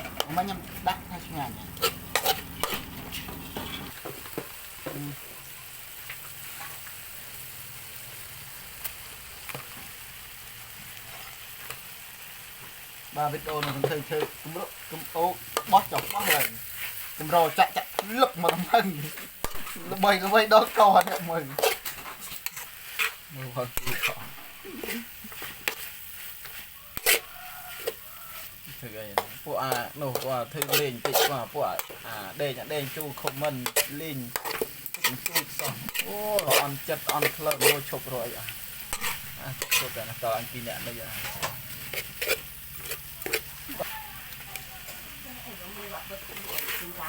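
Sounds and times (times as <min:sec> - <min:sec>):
utensil scraping against pan: 0:00.0 - 0:04.1, 0:13.4 - 0:45.1, 0:45.8 - 0:47.0
food sizzling in hot pan: 0:00.0 - 0:47.0.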